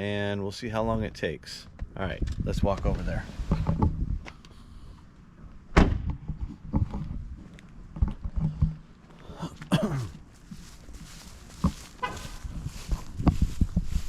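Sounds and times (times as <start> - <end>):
loud thump: 5.7 - 6.2.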